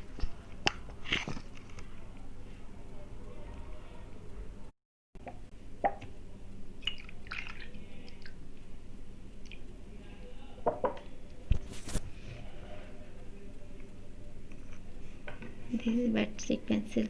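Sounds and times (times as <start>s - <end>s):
faint steady hum: 0.0s - 17.0s.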